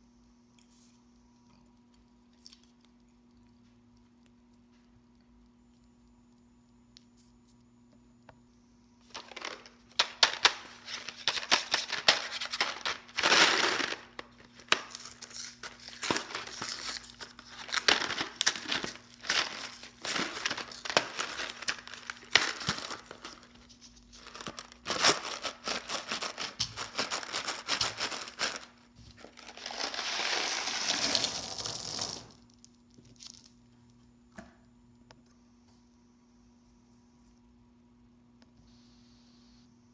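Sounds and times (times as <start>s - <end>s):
candy packaging crinkling: 9.0s - 33.6s.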